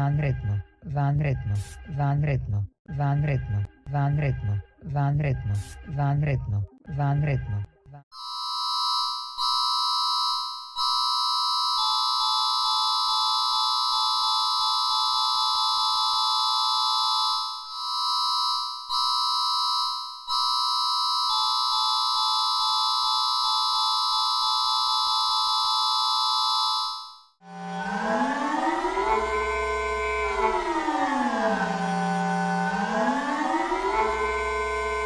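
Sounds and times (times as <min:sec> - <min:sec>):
electronic alert tone: 0:08.2 - 0:27.3.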